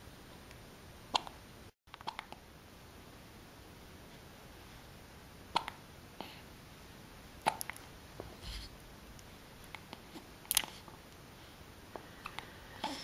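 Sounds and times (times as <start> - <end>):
baby breathing and mouth noises: 7.4 - 11.0, 11.9 - 13.0.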